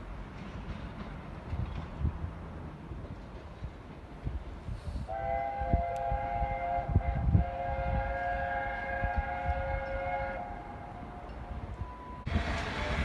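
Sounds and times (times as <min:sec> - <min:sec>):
low rumble of train: 0:00.0 - 0:13.0
train air horn chord: 0:05.1 - 0:11.2, 0:12.3 - 0:13.0.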